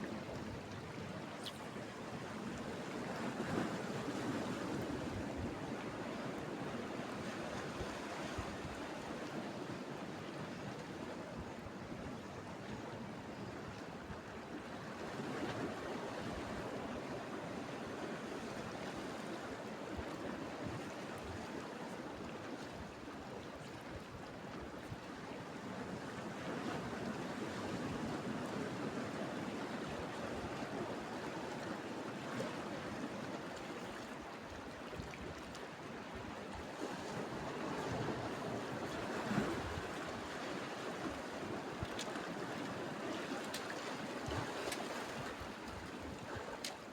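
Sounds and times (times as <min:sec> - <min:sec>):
sea waves washing on shore: 0:25.6 - 0:46.9.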